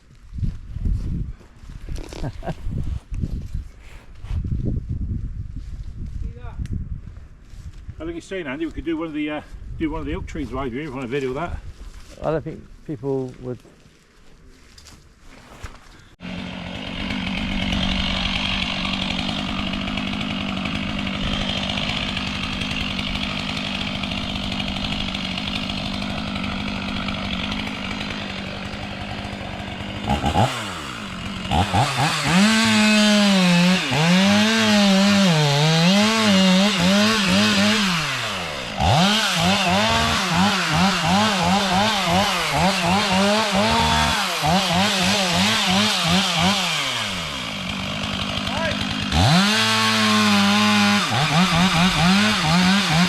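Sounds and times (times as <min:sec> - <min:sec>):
chainsaw revving: 0:16.2 - 0:53.0.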